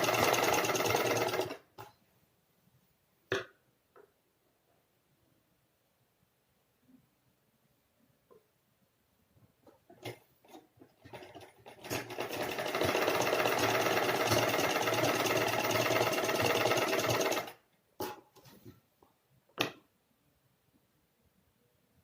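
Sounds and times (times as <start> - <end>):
sewing machine stitching: 0.0 - 1.7, 9.9 - 18.2.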